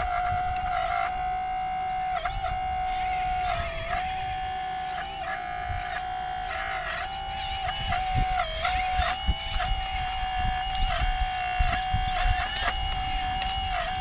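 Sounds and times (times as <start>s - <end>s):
hydraulic pump motor whining: 0.0s - 14.0s.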